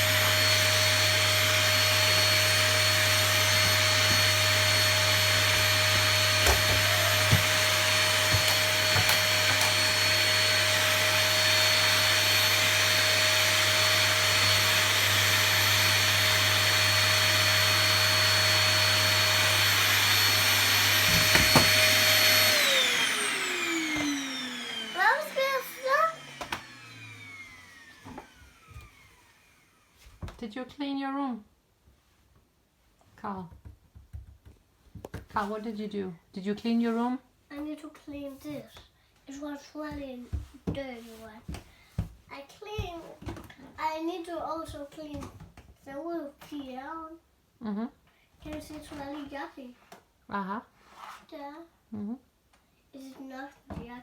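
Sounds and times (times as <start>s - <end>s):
vacuum motor spinning down: 0.0s - 30.0s
vacuum cleaner running: 0.0s - 30.4s.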